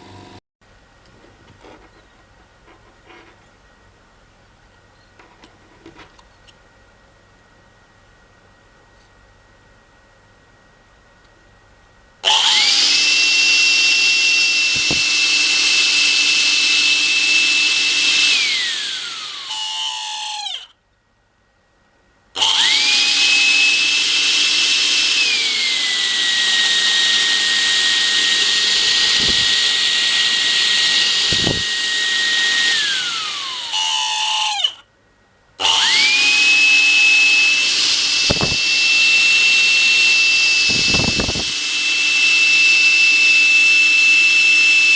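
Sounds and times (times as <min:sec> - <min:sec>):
cordless vacuum cleaner motor whining: 0:00.0 - 0:00.4, 0:12.2 - 0:20.7, 0:22.4 - 0:34.8, 0:35.6 - 0:44.9.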